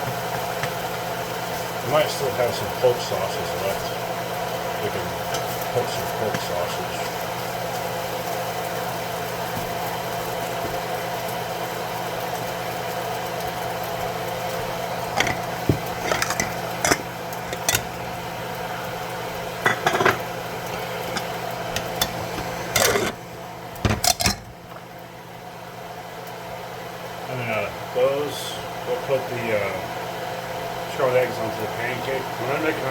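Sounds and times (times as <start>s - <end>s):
mechanical hum: 0.0s - 32.9s
spatula scraping skillet: 15.0s - 18.4s, 19.6s - 23.3s.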